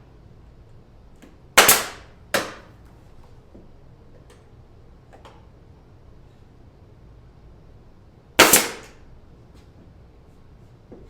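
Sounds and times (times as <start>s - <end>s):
nail gun firing: 1.6s - 2.7s, 8.4s - 9.0s.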